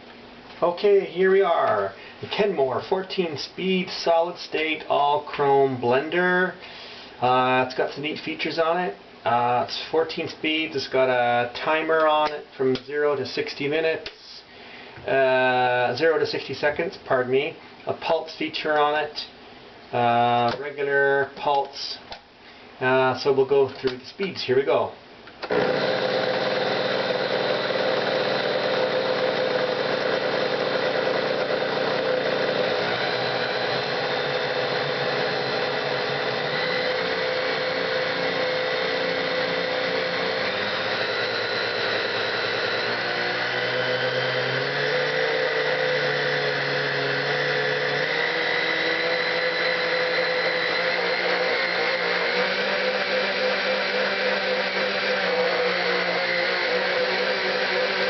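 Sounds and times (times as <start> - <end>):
blender motor running: 25.4 - 58.0.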